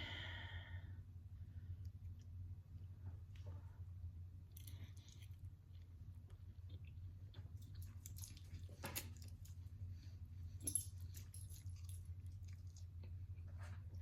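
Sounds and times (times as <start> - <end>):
steady low hum: 0.0 - 14.0
person chewing food: 4.4 - 14.0.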